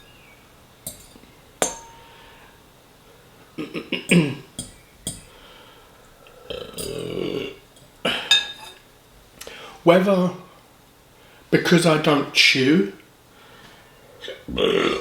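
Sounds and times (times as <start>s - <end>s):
fork clinking on plate: 0.8s - 2.2s, 4.1s - 5.3s, 7.8s - 8.8s
mouth sounds: 14.2s - 15.0s
throaty sound: 14.2s - 15.0s.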